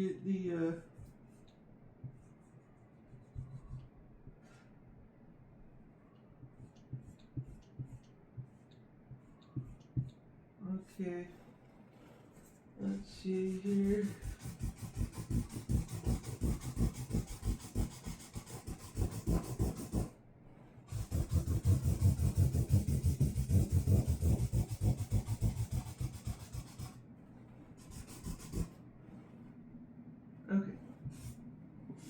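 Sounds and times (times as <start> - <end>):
rapid scribbling strokes: 2.1 - 3.9, 11.4 - 20.2, 20.9 - 27.0, 27.6 - 29.5, 31.0 - 31.5.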